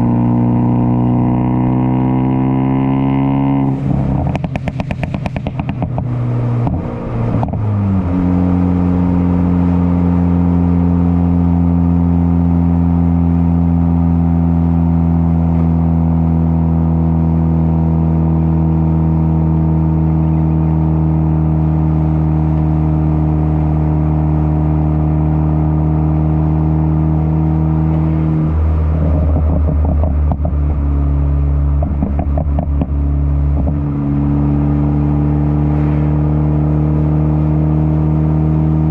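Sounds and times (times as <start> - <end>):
steady engine note: 0.0 - 38.9
exhaust crackles and pops: 3.6 - 7.7, 27.9 - 34.0.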